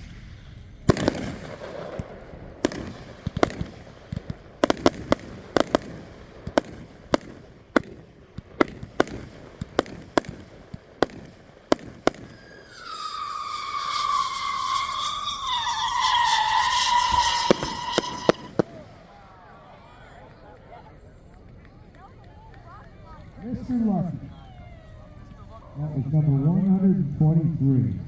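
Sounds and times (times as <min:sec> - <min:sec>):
firework bangs: 0:00.0 - 0:19.8
falling firework whistle: 0:11.0 - 0:19.5.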